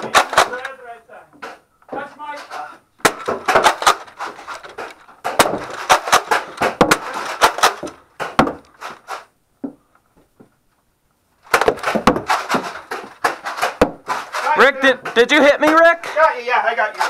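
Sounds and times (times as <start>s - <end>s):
darts striking objects: 3.0s - 9.3s.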